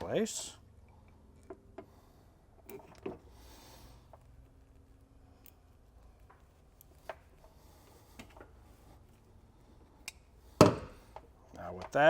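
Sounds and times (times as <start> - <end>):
hand tools and wire clicking: 4.0 - 8.6, 9.9 - 12.0.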